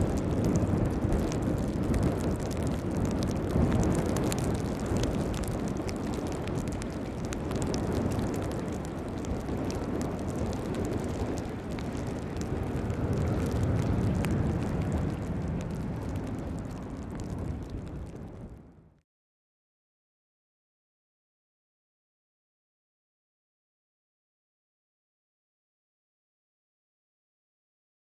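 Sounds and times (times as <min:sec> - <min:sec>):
raindrops ticking: 0:00.0 - 0:18.3
rain: 0:00.0 - 0:19.0.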